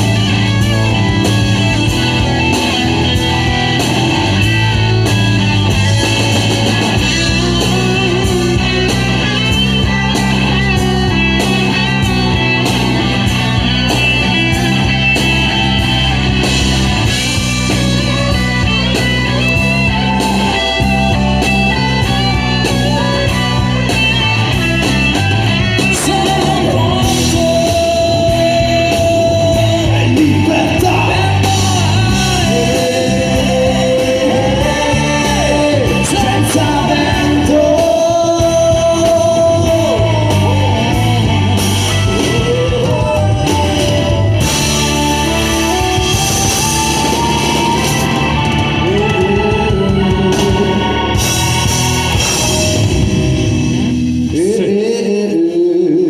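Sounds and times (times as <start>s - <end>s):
live rock band playing: 0.0s - 55.6s
person singing long notes: 25.8s - 52.6s.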